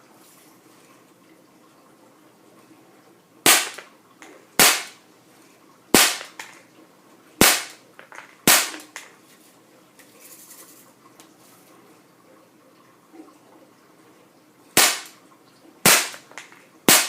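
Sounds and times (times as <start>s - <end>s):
air pistol shots: 3.5s - 3.9s, 4.6s - 5.0s, 6.0s - 6.5s, 7.4s - 7.8s, 8.5s - 9.0s, 14.8s - 15.2s, 15.8s - 17.0s.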